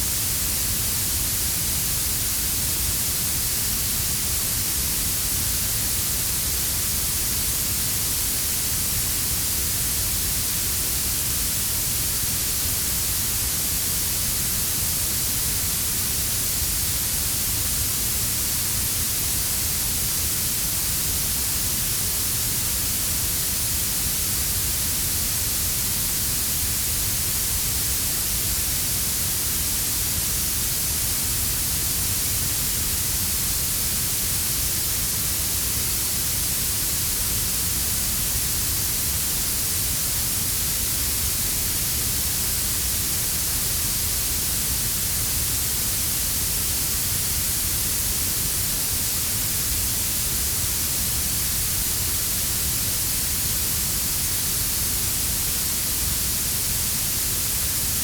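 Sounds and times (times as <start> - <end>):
steady high hiss: 0.0 - 58.0.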